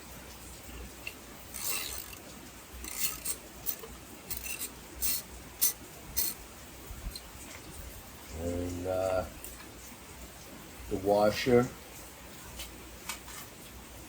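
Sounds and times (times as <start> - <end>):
socket wrench clicking: 1.0 - 2.2, 2.8 - 6.4.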